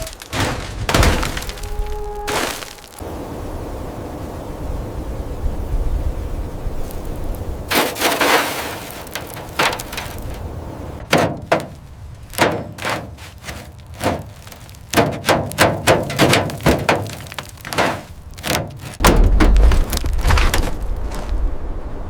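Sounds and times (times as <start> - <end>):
sharp knocks and clatters: 7.7 - 10.4, 11.0 - 20.8.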